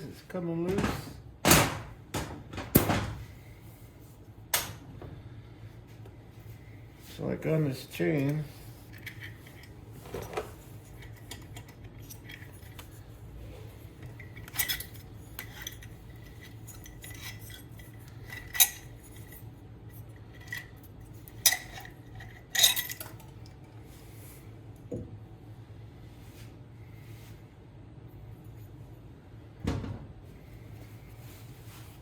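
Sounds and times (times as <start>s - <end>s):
low steady hum: 0.0s - 32.0s
metal parts and tools clinking: 14.0s - 19.5s, 20.3s - 23.4s.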